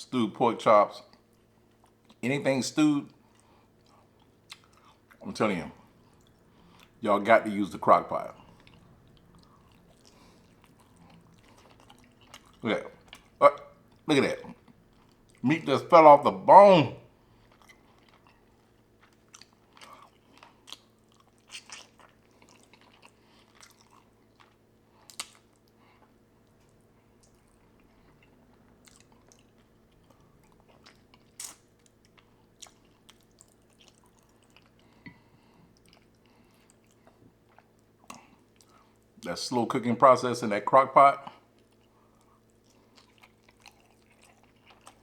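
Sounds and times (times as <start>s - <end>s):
wet chewing and mouth smacks: 1.1s - 2.2s, 3.1s - 7.0s, 8.2s - 15.4s, 17.2s - 39.2s, 41.5s - 45.0s.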